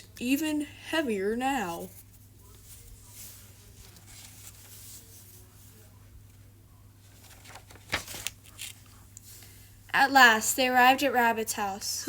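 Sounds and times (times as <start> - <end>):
low electrical hum: 0.0 - 12.0
faint soft rustling: 1.0 - 9.7.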